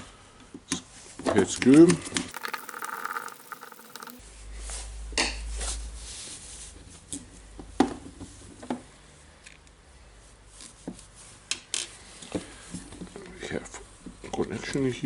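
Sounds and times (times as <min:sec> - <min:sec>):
sharp clicks and taps: 0:02.3 - 0:04.2.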